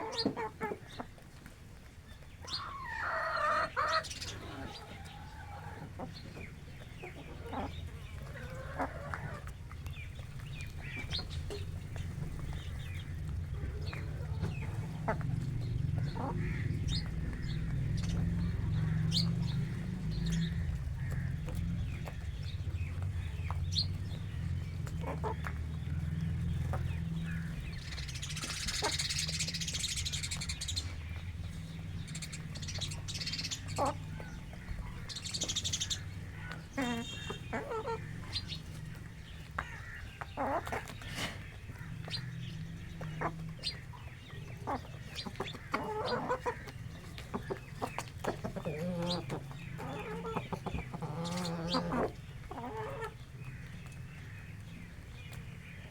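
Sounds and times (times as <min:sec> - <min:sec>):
chickens chirping and clucking: 0:00.0 - 0:55.9
steady low rumble: 0:09.5 - 0:40.1.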